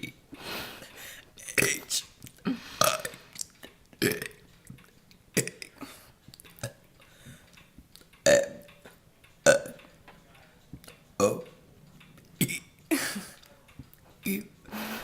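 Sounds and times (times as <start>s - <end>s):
person burping: 1.4s - 3.2s, 4.0s - 4.4s, 5.4s - 5.9s, 8.3s - 8.6s, 9.5s - 9.8s, 11.2s - 11.4s, 12.4s - 13.4s.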